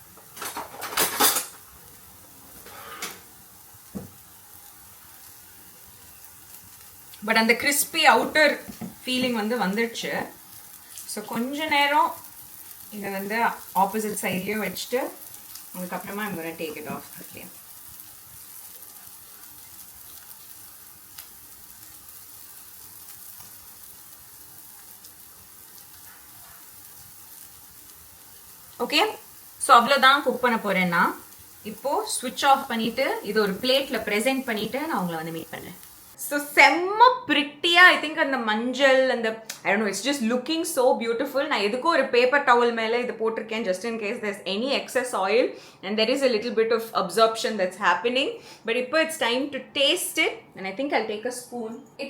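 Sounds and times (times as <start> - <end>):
food sizzling in oil: 0.0 - 36.9
utensil clattering in frying pan: 0.2 - 1.7
utensil scraping frying pan: 2.5 - 3.3.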